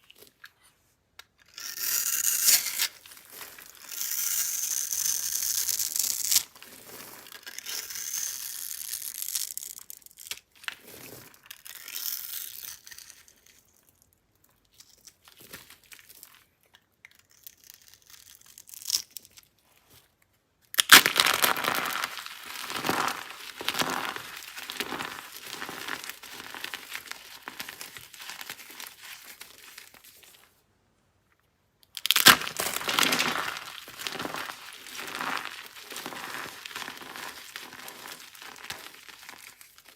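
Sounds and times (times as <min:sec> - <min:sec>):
dry soap crunching: 0:01.5 - 0:13.7, 0:20.7 - 0:30.5, 0:31.8 - 0:39.9.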